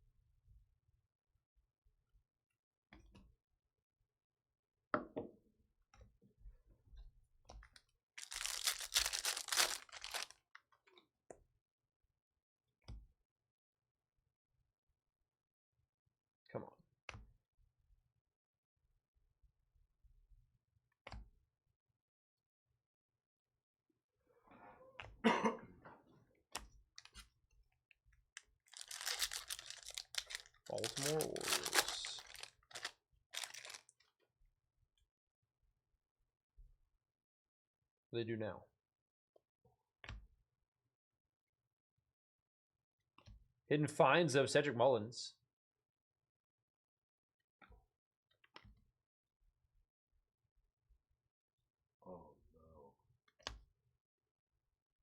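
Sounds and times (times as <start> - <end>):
foil wrapper tearing and crackling: 8.2 - 10.3, 28.7 - 33.9
person coughing: 25.2 - 25.8
cards knocking and clicking: 28.9 - 33.8.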